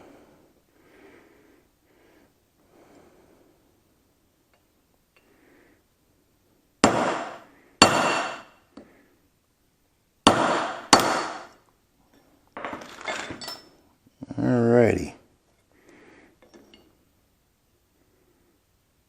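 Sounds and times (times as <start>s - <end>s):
hammer striking metal punch: 6.8s - 8.5s, 10.2s - 11.6s.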